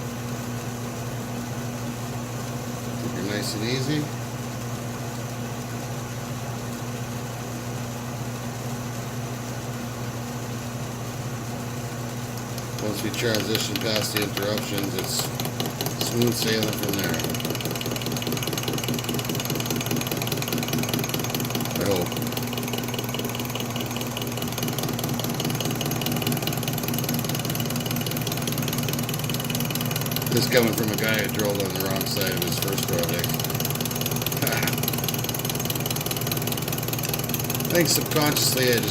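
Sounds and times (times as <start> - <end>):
fast regular ticking: 12.3 - 38.9
metal lathe running: 12.4 - 38.9.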